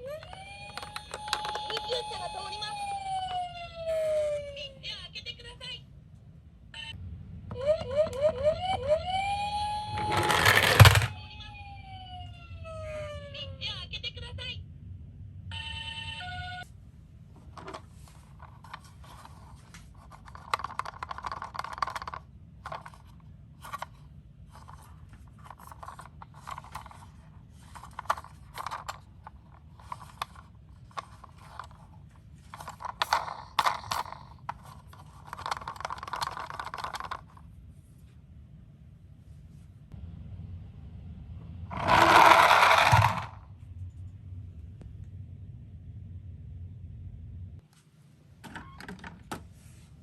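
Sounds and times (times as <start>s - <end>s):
toy cars rolling on cardboard: 0.2s - 2.7s, 9.9s - 11.1s, 17.6s - 37.4s, 41.7s - 43.4s
light clicks and clatter: 17.4s - 37.4s.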